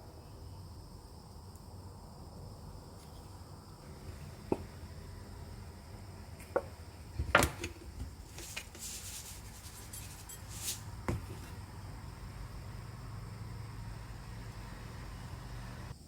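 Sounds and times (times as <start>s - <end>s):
rustling swishes: 8.2s - 11.5s.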